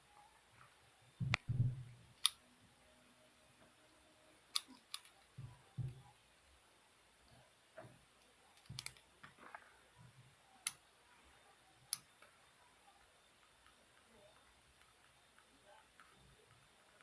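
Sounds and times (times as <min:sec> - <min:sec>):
soft taps and knocks: 0:05.4 - 0:06.1.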